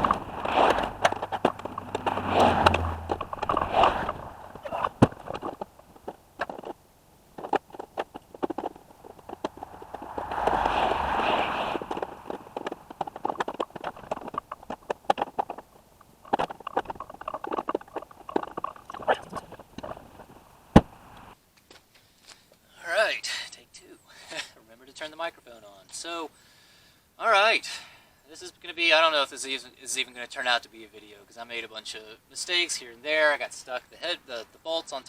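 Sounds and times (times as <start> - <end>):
brief rushing noise: 9.0 - 13.3
hand tools clicking and knocking: 12.6 - 20.0.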